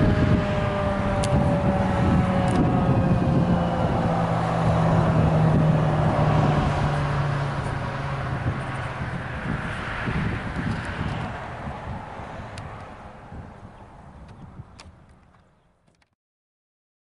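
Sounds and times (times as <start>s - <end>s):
siren winding down: 0.0s - 13.6s
traffic noise: 0.0s - 16.1s.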